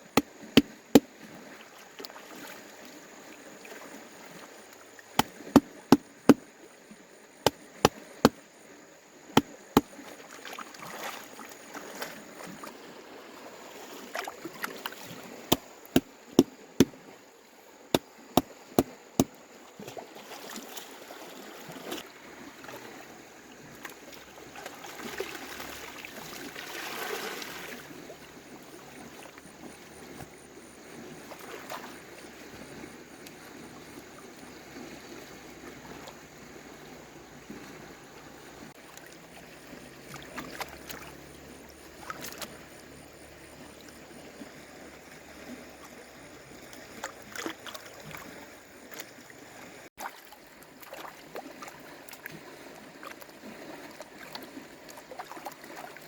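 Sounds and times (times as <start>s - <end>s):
rushing water-like noise: 0.0s - 29.3s
sharp chopping strikes: 5.2s - 6.4s, 15.5s - 16.1s.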